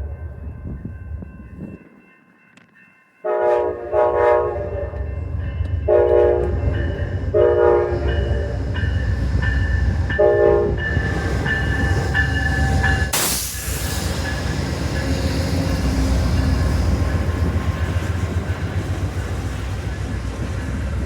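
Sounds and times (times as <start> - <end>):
train rumble: 0.0 - 21.0
train horn blasts: 3.2 - 5.2, 5.8 - 8.5, 10.2 - 10.9.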